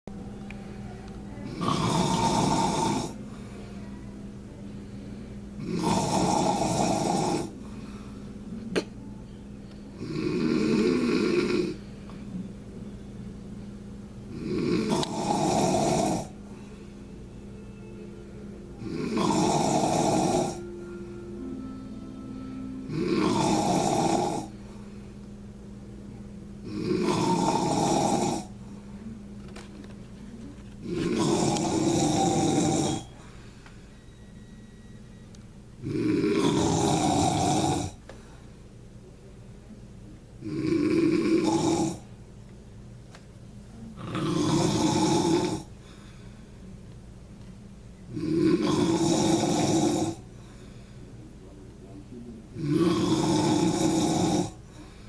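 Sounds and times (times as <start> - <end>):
steady low hum: 0.0 - 55.0
man snoring loudly: 1.5 - 3.2, 5.6 - 7.6, 10.0 - 11.8, 14.3 - 16.4, 18.8 - 20.7, 22.9 - 24.6, 26.6 - 28.5, 30.8 - 33.1, 35.8 - 38.0, 40.4 - 42.0, 44.0 - 45.7, 48.1 - 50.2, 52.6 - 54.6
quiet breathing: 2.1 - 8.6, 15.0 - 18.0, 24.2 - 25.4, 30.6 - 34.9, 37.4 - 38.7, 45.6 - 46.8, 50.1 - 52.4, 54.4 - 55.0.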